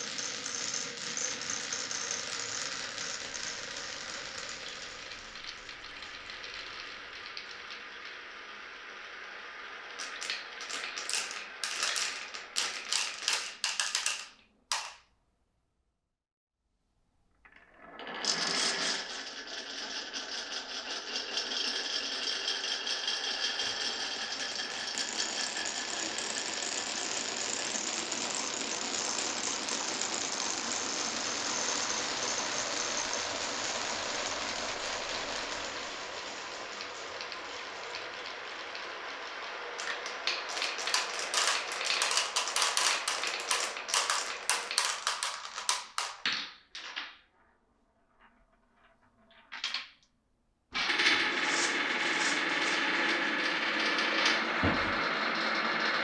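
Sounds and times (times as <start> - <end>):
glass marbles rolling on wooden track: 0.0 - 15.0, 17.5 - 47.5, 48.1 - 50.1, 50.8 - 56.0.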